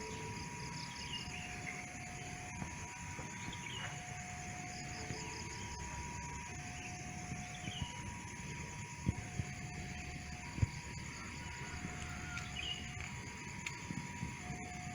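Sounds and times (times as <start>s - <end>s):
faint chirping insects: 0.0s - 14.9s
two-tone level crossing alarm: 0.0s - 14.9s
birds chirping: 12.2s - 13.0s.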